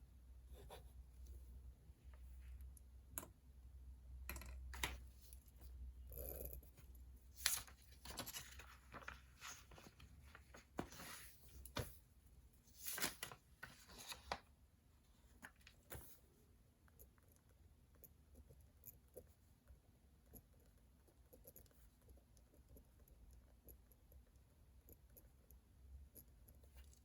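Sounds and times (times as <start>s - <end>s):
paper rustling and scratching: 6.7s - 12.0s, 12.7s - 14.5s.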